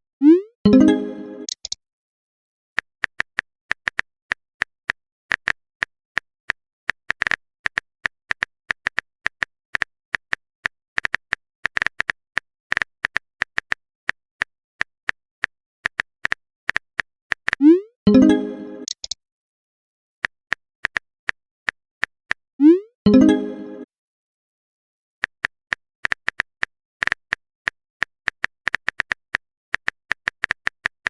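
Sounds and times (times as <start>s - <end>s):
phone keyboard tapping clicks: 1.4s - 1.8s, 18.8s - 19.2s.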